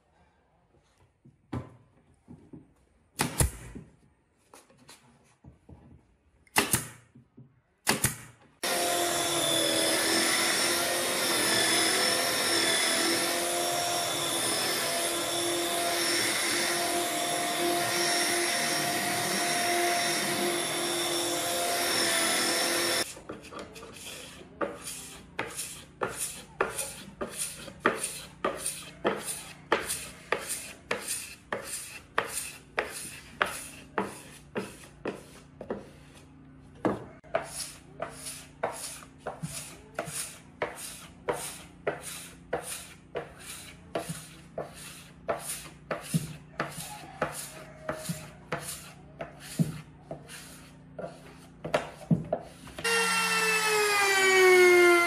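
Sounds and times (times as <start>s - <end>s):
power tool whining: 8.6s - 23.1s, 52.8s - 55.0s.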